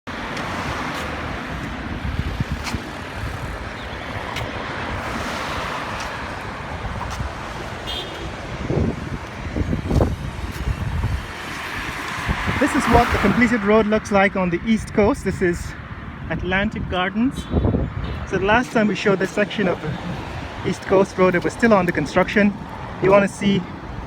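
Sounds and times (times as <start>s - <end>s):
highway traffic: 0.0s - 24.0s.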